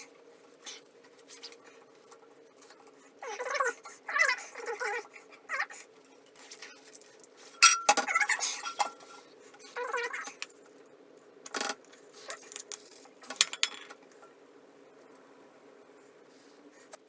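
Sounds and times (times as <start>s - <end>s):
metal tools clinking: 7.6s - 9.2s.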